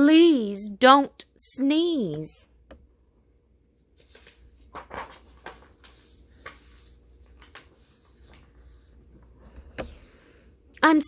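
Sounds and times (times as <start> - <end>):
paper rustles: 3.9 - 9.2.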